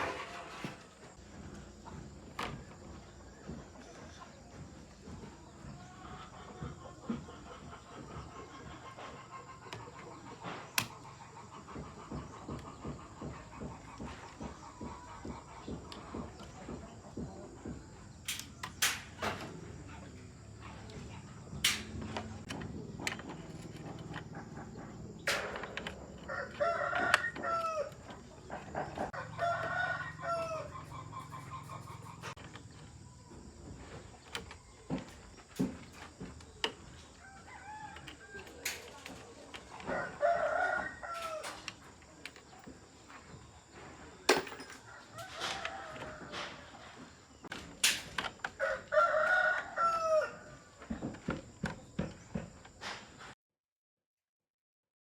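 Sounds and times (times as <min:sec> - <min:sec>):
rooster crowing: 0:26.2 - 0:32.4, 0:37.1 - 0:39.0, 0:39.8 - 0:41.7, 0:44.8 - 0:46.6, 0:48.6 - 0:50.7.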